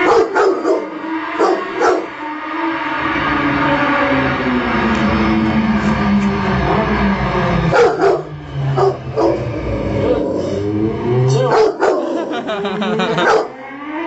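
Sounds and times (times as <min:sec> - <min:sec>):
dog yelping barks: 0:00.0 - 0:02.1, 0:07.7 - 0:08.2, 0:11.4 - 0:12.2, 0:13.2 - 0:13.6
dog howling: 0:00.0 - 0:02.2, 0:06.6 - 0:14.0.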